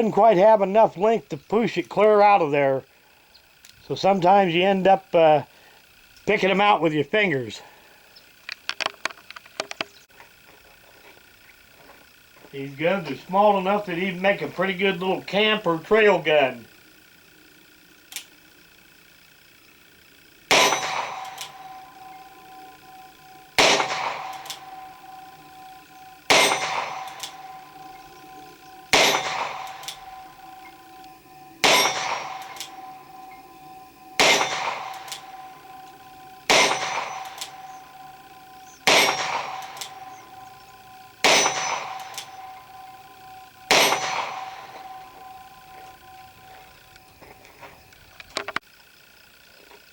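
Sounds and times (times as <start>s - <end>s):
revolver gunshots: 20.4s - 47.0s
metallic ringing of steel target: 20.5s - 47.3s.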